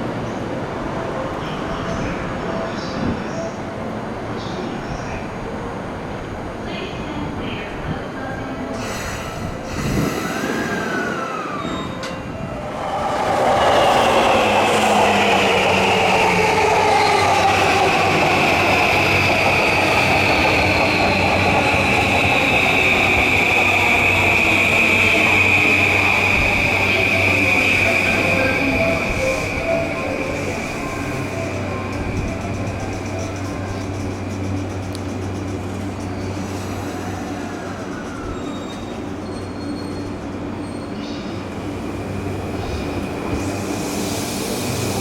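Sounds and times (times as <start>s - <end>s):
high wheel squeal: 9.7s - 33.8s, 36.0s - 41.2s.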